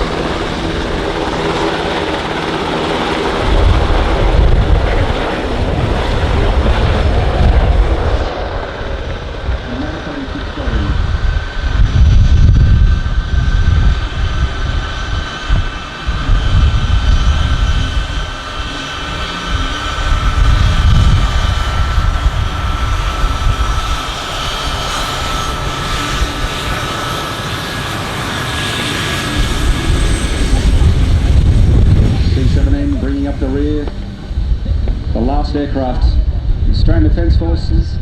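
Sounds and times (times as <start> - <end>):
high steady engine whine: 0.0 - 38.0
jet engine low rumble: 0.0 - 38.0.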